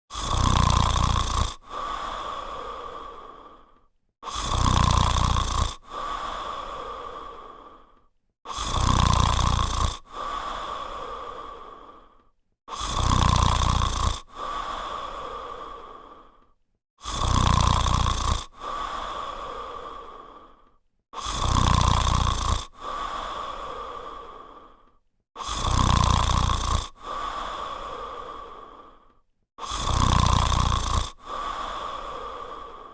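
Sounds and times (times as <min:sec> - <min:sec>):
dog snoring: 0:00.1 - 0:03.5, 0:04.2 - 0:07.5, 0:08.5 - 0:10.6, 0:12.7 - 0:14.8, 0:17.0 - 0:19.1, 0:21.2 - 0:23.2, 0:25.4 - 0:27.6, 0:29.6 - 0:32.8.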